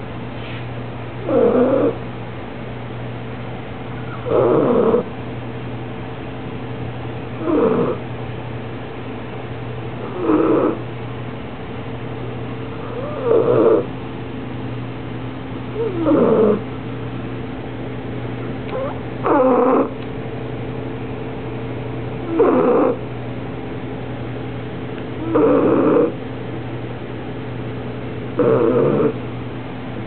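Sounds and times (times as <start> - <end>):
puppy snoring softly: 1.2 - 2.0, 4.0 - 5.1, 7.4 - 8.0, 10.0 - 10.9, 12.7 - 13.9, 15.7 - 16.6, 18.7 - 20.0, 22.2 - 23.0, 25.2 - 26.2, 28.3 - 29.2.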